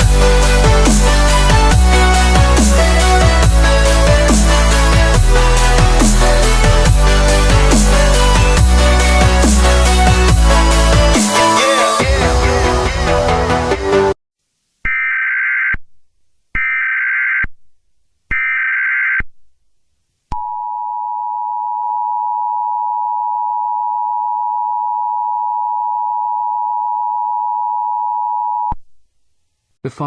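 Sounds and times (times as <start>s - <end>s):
electronic music: 0.0s - 14.2s.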